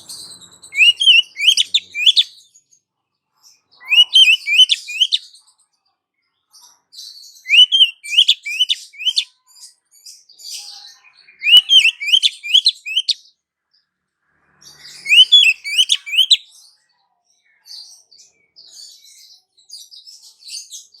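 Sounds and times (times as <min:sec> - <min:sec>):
bird chirping: 0:00.0 - 0:02.8, 0:03.4 - 0:05.6, 0:07.0 - 0:13.4, 0:14.5 - 0:16.8.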